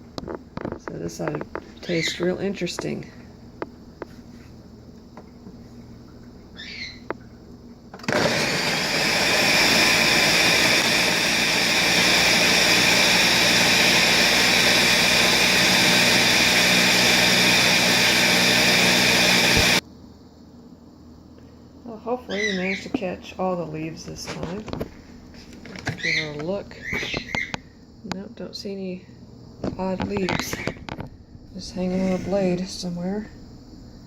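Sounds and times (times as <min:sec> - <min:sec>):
blender running: 0:08.0 - 0:19.8.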